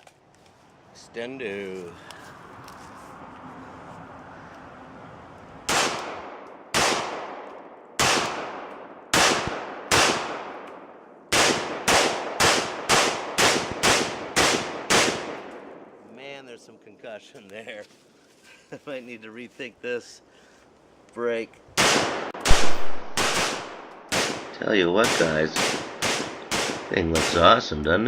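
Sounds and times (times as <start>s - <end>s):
rifle shots with echo: 5.7s - 16.0s, 21.8s - 27.6s.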